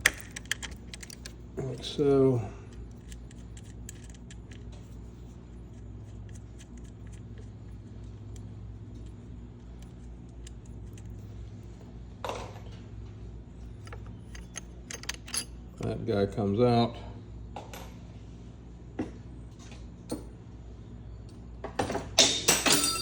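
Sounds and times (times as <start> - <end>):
wrench clicking on metal nuts: 0.0 - 1.4, 2.8 - 4.6, 13.8 - 15.5
steady low hum: 0.0 - 21.6.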